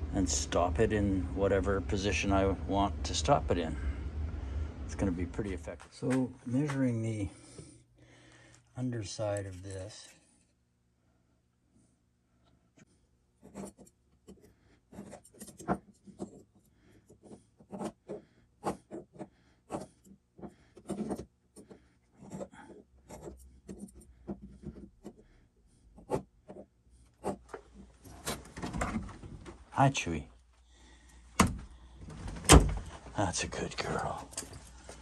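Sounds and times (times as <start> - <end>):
marking tool scratching metal: 13.4 - 25.2, 26.0 - 27.5.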